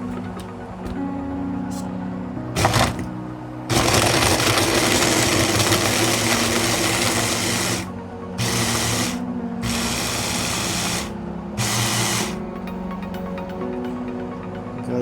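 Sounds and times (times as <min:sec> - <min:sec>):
hand blender motor chopping: 0:02.6 - 0:03.0, 0:03.7 - 0:12.4.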